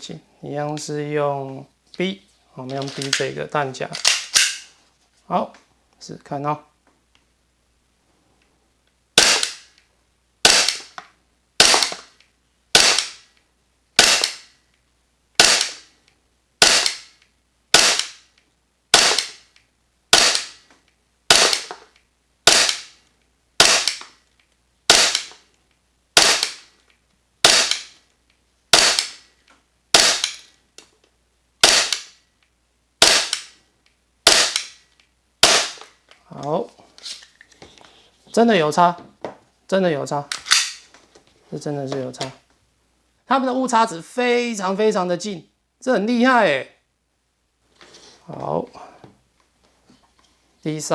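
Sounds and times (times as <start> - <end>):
airsoft pistol shots: 9.2 - 9.7, 10.4 - 11.0, 11.6 - 12.1, 12.7 - 13.3, 14.0 - 14.5, 15.4 - 15.8, 16.6 - 18.2, 18.9 - 19.5, 20.1 - 20.6, 21.3 - 21.8, 22.4 - 22.9, 23.6 - 24.0, 24.9 - 25.3, 26.2 - 26.7, 27.4 - 27.9, 28.7 - 29.2, 29.9 - 30.4, 31.6 - 32.1, 33.0 - 33.5, 34.2 - 34.8, 35.4 - 35.9.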